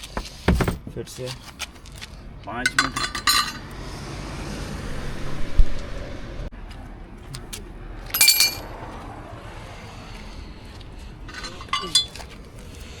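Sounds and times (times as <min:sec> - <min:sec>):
dull thump: 0:00.0 - 0:01.1
metal tools clinking: 0:02.6 - 0:03.6, 0:08.1 - 0:08.6, 0:11.3 - 0:12.3
ringing metallic clatter: 0:02.7 - 0:03.6, 0:08.1 - 0:08.6, 0:11.3 - 0:12.2.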